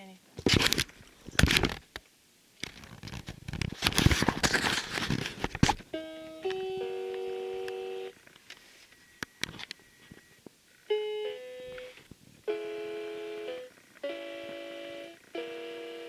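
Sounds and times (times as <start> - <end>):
electronic keyboard chords: 5.8 - 8.2, 10.9 - 16.0.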